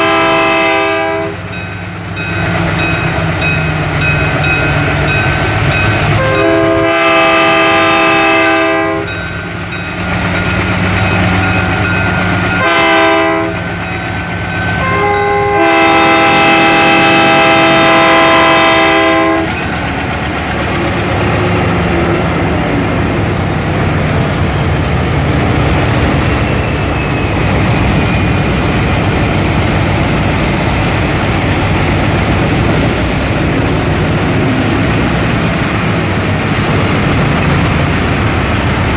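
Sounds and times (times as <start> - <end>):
diesel locomotive horn: 0.0 - 1.6, 6.0 - 9.3, 11.6 - 19.7
diesel engines droning: 1.9 - 38.9.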